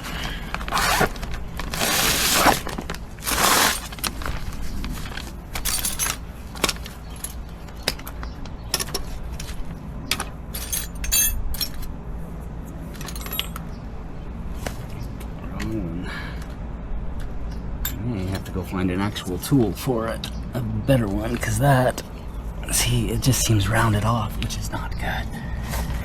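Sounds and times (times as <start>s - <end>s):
rustling scrapes: 0.0s - 7.3s
metal tools clinking: 3.2s - 4.4s, 5.0s - 8.0s, 8.7s - 11.9s, 12.9s - 13.6s.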